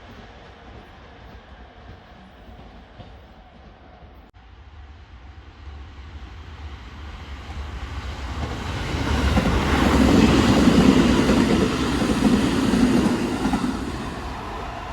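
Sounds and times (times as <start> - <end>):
electric train approaching: 4.5 - 14.9.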